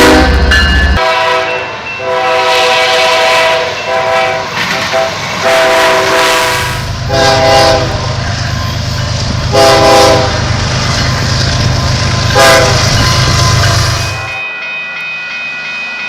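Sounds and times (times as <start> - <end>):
locomotive horn blasts: 0.0 - 8.2, 9.5 - 10.6, 12.3 - 13.5
train rumbling past: 0.0 - 16.0.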